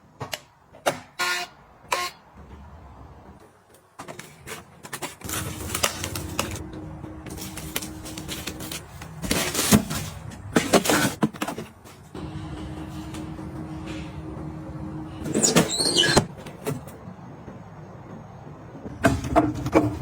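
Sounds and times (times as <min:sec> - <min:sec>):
steady low hum: 0:05.3 - 0:09.4, 0:12.1 - 0:15.3.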